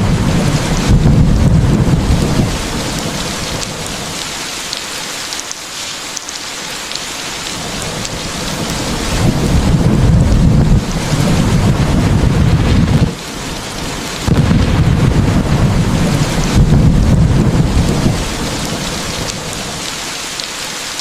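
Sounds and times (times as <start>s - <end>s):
rolling thunder: 0.0s - 4.2s, 7.6s - 19.9s
heavy rain: 0.0s - 21.0s
raindrop ticks: 0.7s - 10.8s, 16.2s - 21.0s.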